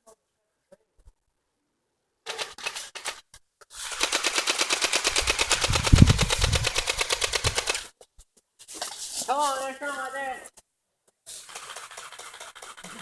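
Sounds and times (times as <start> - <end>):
airsoft gun firing: 3.8 - 7.9.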